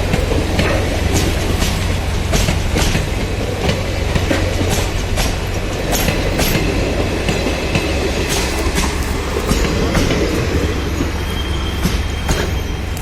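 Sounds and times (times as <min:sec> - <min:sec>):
low train rumble: 0:00.0 - 0:13.0
train wheels clacking over rail joints: 0:00.0 - 0:13.0
faint thin squeal: 0:10.3 - 0:13.0.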